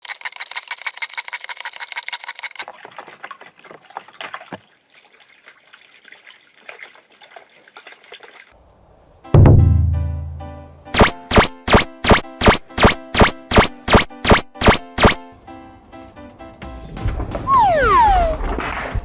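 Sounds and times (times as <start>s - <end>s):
water pouring and splashing: 0.0s - 8.6s, 17.0s - 19.0s.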